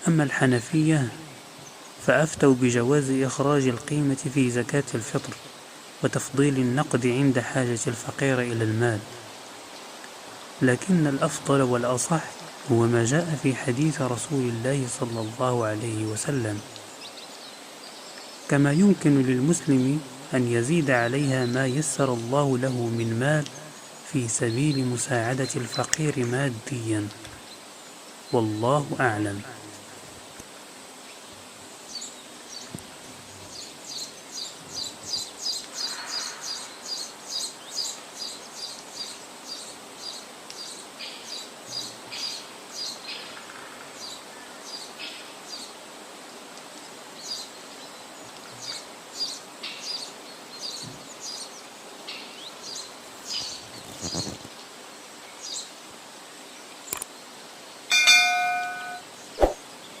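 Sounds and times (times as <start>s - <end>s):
birds chirping: 0.0s - 45.8s, 46.8s - 55.8s, 56.4s - 60.0s
ringing chime-like tone: 57.9s - 59.1s.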